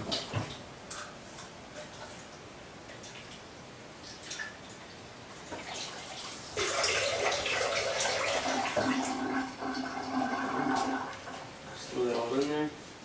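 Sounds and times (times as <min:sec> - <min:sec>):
water pouring into a pot: 0:05.6 - 0:12.2.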